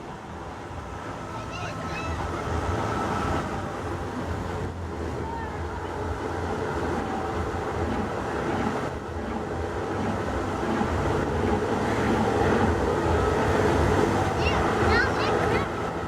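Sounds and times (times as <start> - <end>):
steady rumbling background noise: 0.0 - 16.0.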